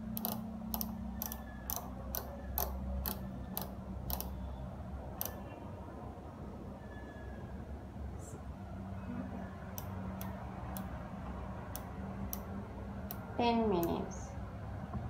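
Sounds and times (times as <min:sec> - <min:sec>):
microwave control clicking: 0:00.0 - 0:04.4
steady low hum: 0:00.0 - 0:06.8.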